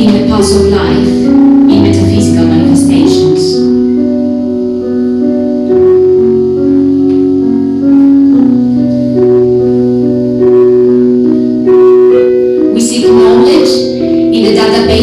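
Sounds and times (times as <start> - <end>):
piano playing slow chords: 0.0 - 15.0.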